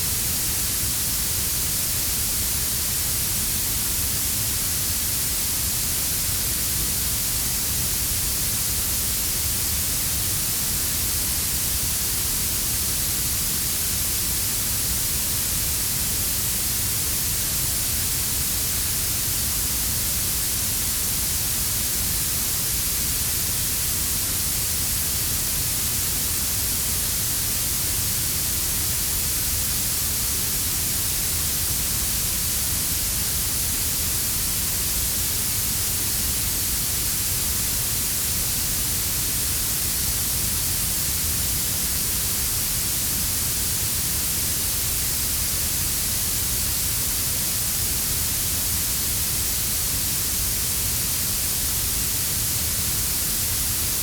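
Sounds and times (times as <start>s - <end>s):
steady treble hiss: 0.0s - 54.0s.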